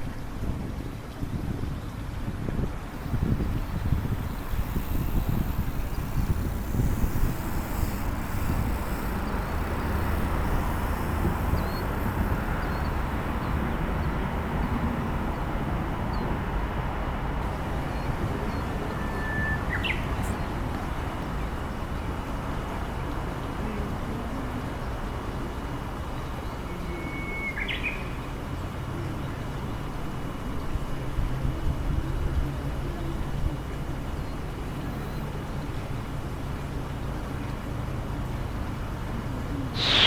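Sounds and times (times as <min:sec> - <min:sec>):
wind rumbling on microphone: 0:00.0 - 0:19.0, 0:39.7 - 0:40.0
faint bird chirps: 0:03.0 - 0:16.3, 0:39.8 - 0:40.0.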